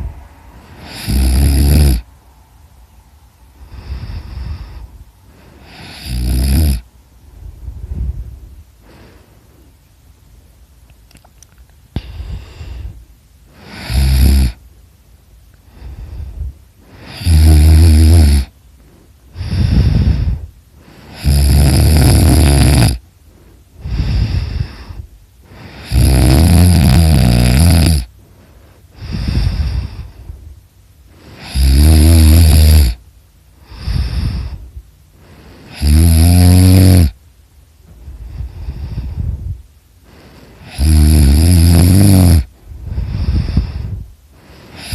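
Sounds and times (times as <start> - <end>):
person snoring: 0.0 - 2.1, 3.6 - 6.9, 12.0 - 14.6, 15.7 - 18.5, 19.3 - 23.0, 23.8 - 28.1, 29.0 - 30.4, 31.2 - 33.0, 33.6 - 34.6, 35.2 - 37.2, 38.1 - 44.9
quiet breathing: 0.0 - 44.9.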